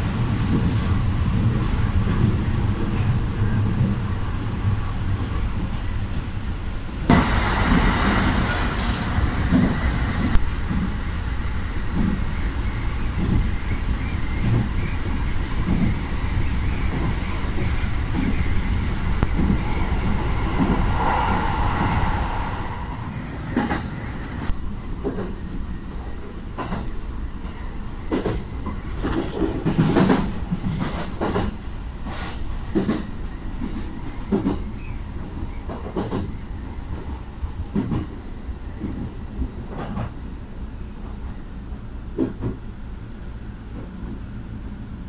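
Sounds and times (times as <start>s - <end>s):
train rumbling: 0.0s - 45.0s
wheels clacking over rail joints: 7.1s - 10.4s.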